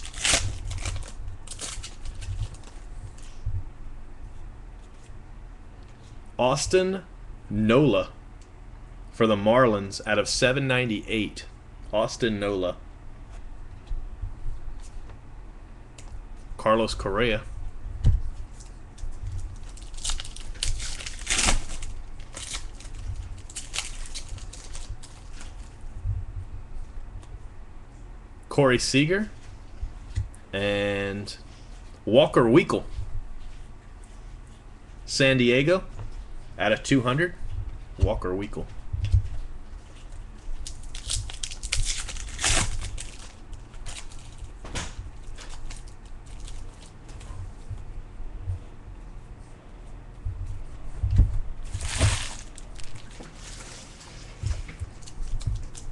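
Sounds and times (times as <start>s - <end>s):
low steady hum: 0.0s - 55.9s
trading cards rustling: 18.5s - 25.7s, 51.7s - 54.0s.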